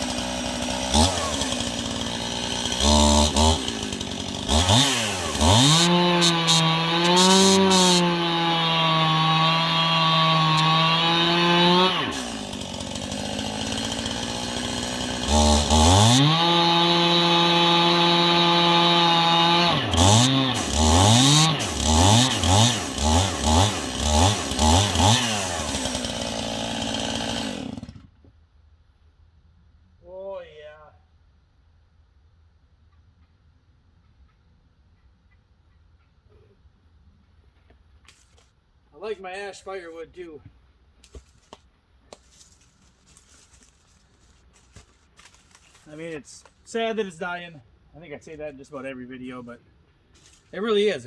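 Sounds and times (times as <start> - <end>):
chainsaw cutting logs: 0.0 - 28.3, 38.1 - 38.6, 41.0 - 47.2, 50.1 - 51.0.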